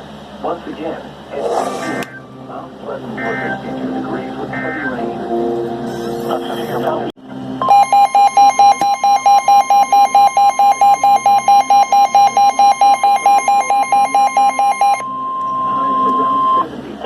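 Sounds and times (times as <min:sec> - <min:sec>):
rapid alarm beeps: 0:07.6 - 0:16.7
steady warning alarm tone: 0:07.6 - 0:16.7.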